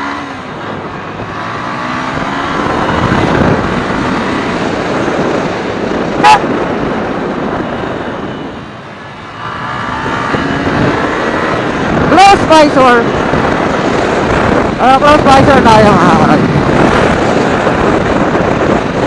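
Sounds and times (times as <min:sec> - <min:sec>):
wind rushing over microphone: 0:00.0 - 0:19.0
brief sharp high tone: 0:06.2 - 0:06.5.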